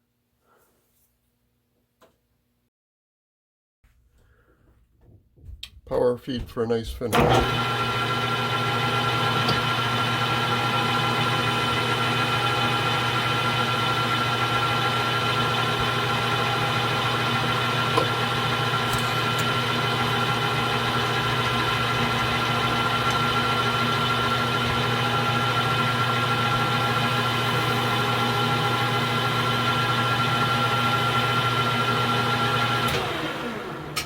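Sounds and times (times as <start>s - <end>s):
lathe motor and gear hum: 7.1s - 34.0s.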